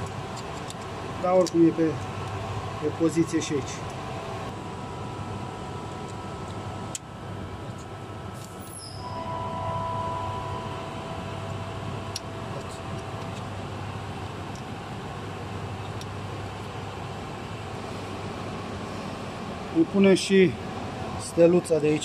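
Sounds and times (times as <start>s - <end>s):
machinery humming: 0.0s - 22.0s
steady tone: 8.6s - 14.1s.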